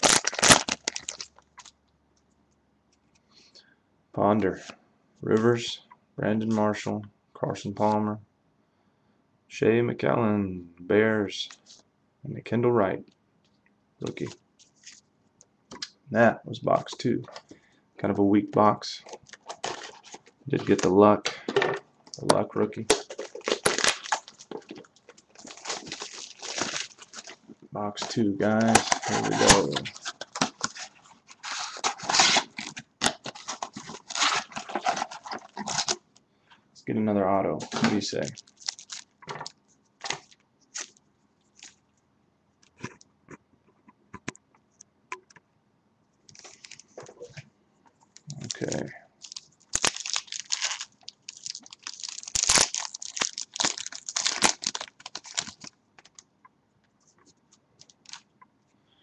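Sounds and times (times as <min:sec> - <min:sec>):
wrapper crinkling and tearing: 0:00.0 - 0:01.8, 0:19.0 - 0:20.9, 0:22.8 - 0:36.0, 0:37.6 - 0:41.8, 0:48.3 - 0:56.2, 0:57.8 - 0:58.2
cards being handled: 0:22.2 - 0:36.0, 0:37.6 - 0:41.0.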